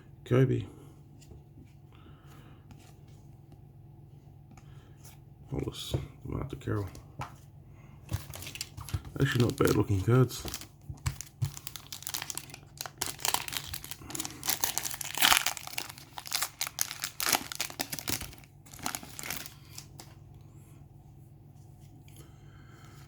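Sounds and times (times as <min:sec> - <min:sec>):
wrapper tearing and crinkling: 0:10.5 - 0:20.1.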